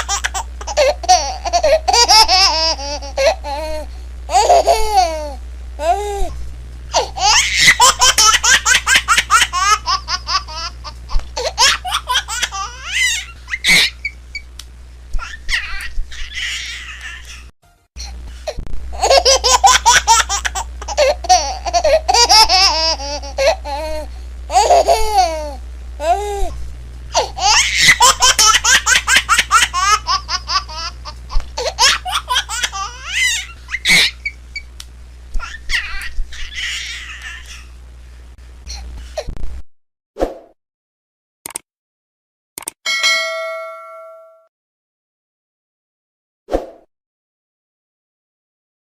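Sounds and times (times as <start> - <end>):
small child laughing: 0.0 - 6.4, 7.0 - 14.2, 15.2 - 18.2, 19.0 - 26.6, 27.2 - 34.6, 35.4 - 37.7.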